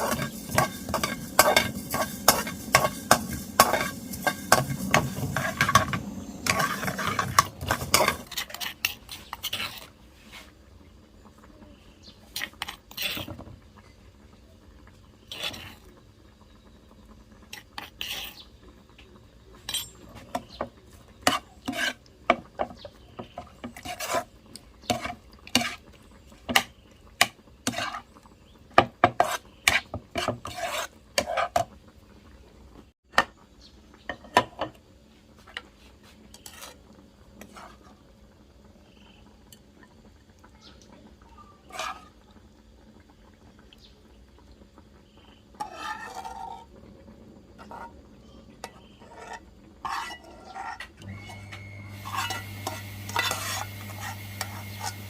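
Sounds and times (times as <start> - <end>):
utensils clinking on cookware: 0.0 - 9.7, 19.6 - 24.3, 48.6 - 55.0
utensil scraping a pan: 0.0 - 10.6, 12.4 - 13.4, 15.2 - 15.9, 17.5 - 18.4, 19.6 - 28.2, 28.8 - 31.8, 35.4 - 38.0, 41.6 - 42.2, 45.6 - 46.7, 47.6 - 48.0, 48.6 - 55.0
food sizzling in a pan: 0.0 - 55.0.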